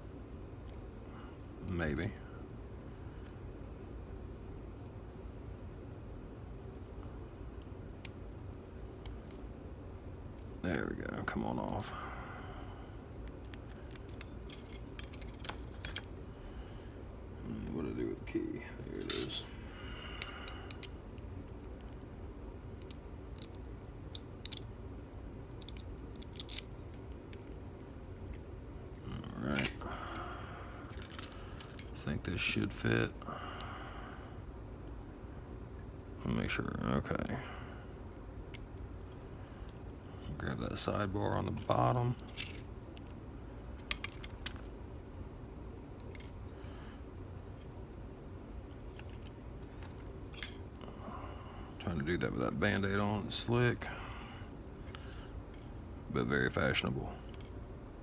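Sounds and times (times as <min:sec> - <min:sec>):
steady low hum: 0:00.0 - 0:58.0
metallic clicks of lock parts: 0:13.2 - 0:16.3, 0:20.2 - 0:22.1, 0:22.8 - 0:24.8, 0:25.5 - 0:30.3, 0:30.9 - 0:32.6, 0:41.6 - 0:43.2, 0:43.8 - 0:44.8, 0:45.4 - 0:46.5, 0:49.0 - 0:50.8, 0:57.3 - 0:57.6
light clicks and metallic taps: 0:22.8 - 0:24.7, 0:25.5 - 0:26.7.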